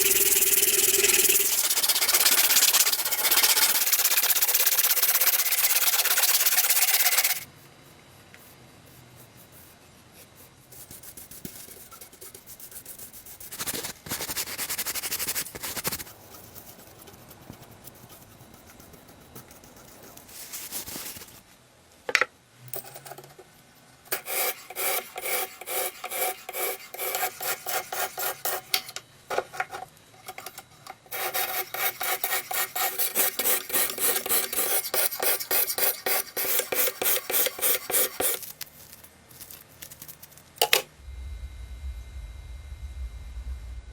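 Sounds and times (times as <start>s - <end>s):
rasping strokes on rusty knife: 24.2s - 28.7s, 31.1s - 38.4s.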